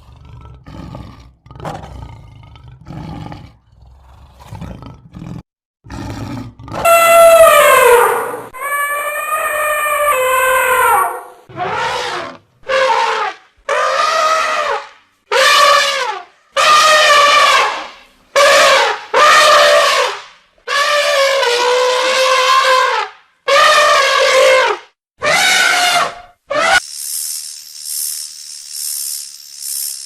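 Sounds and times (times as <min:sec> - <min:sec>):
loud animal calls: 0:06.8 - 0:15.7.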